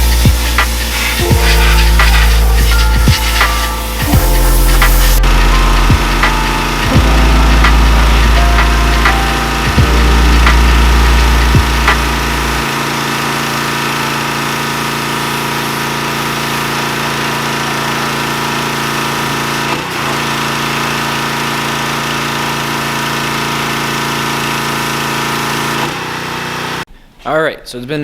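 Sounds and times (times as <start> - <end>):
engine deep rumble: 0.0 - 14.5.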